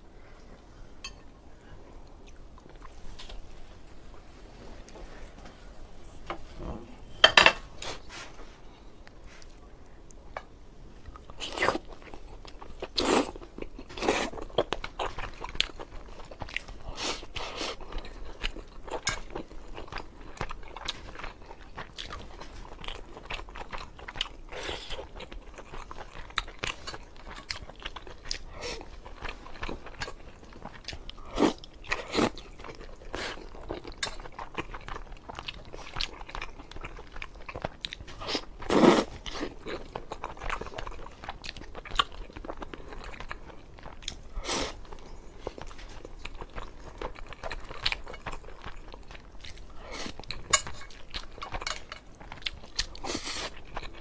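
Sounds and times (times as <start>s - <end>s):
person chewing food: 9.0s - 54.0s.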